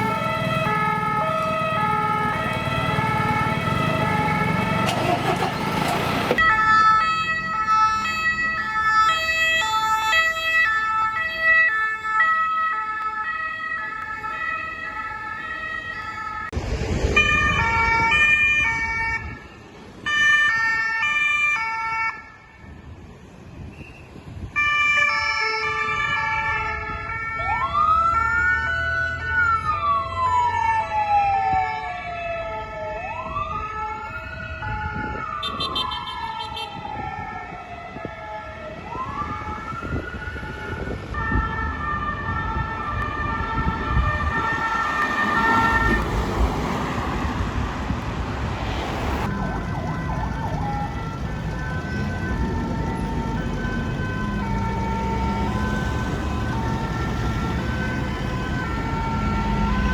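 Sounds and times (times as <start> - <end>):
two-tone emergency siren: 0.0 - 22.9, 24.4 - 47.7, 49.0 - 59.9
wailing siren: 0.0 - 23.0, 24.5 - 48.0, 48.9 - 59.9
loud rush: 16.5 - 18.2, 44.6 - 50.6.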